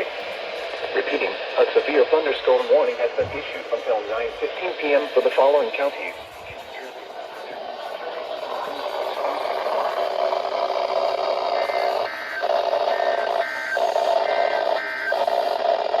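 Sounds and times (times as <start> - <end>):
static hiss: 0.0 - 12.1
two-tone digital data warble: 10.8 - 15.6.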